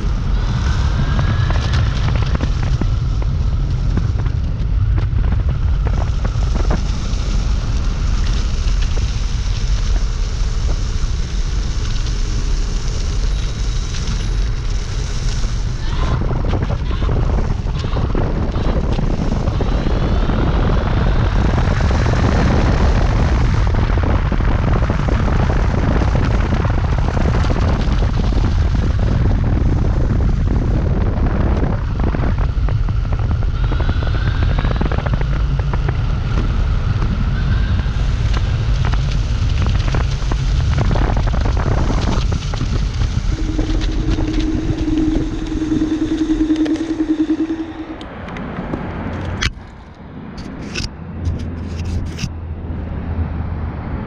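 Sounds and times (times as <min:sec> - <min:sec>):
steady hum: 0:00.0 - 0:24.6, 0:40.8 - 0:48.6
road noise: 0:00.0 - 0:25.7, 0:35.4 - 0:54.0
wind buffeting microphone: 0:00.0 - 0:52.8
electric motor whine: 0:41.8 - 0:48.2.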